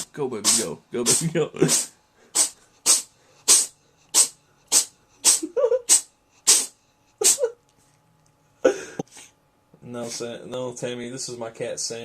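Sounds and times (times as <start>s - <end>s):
cat sneezing: 0.0s - 7.6s.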